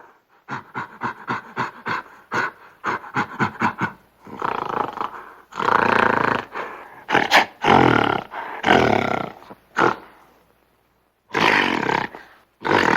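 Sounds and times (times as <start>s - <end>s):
gorilla growling: 0.5s - 10.3s, 11.3s - 12.9s.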